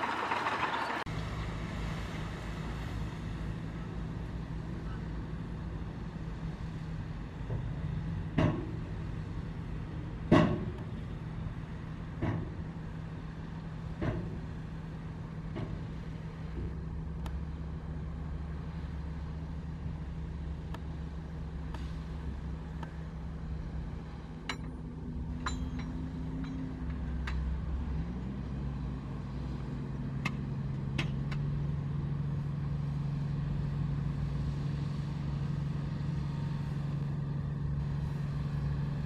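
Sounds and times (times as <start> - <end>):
diesel machinery engine drone: 0.0 - 39.0
sharp metallic clanks: 24.5 - 27.4.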